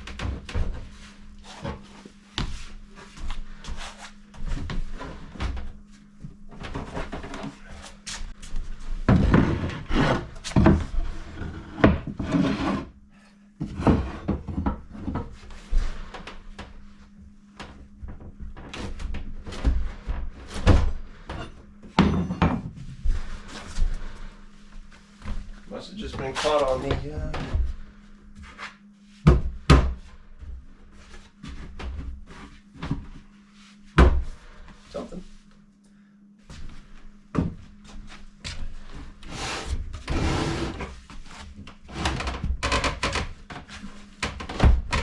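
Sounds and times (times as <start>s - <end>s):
wooden cabinet scraping and knocking: 9.0s - 13.0s, 13.6s - 15.4s, 19.7s - 23.0s, 39.2s - 41.0s, 41.8s - 45.0s.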